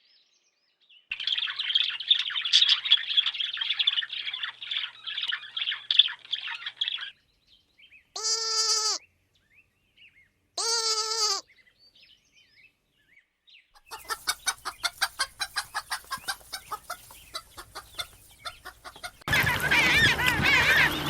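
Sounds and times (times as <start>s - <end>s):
brief bleat: 8.2s - 9.0s, 10.6s - 11.4s
hen clucking: 8.2s - 9.0s, 13.8s - 21.0s
chicks peeping: 13.8s - 21.0s.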